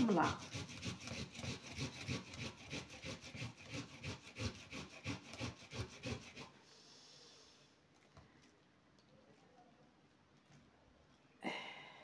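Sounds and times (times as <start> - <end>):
onion rasping on grater: 0.0 - 6.7.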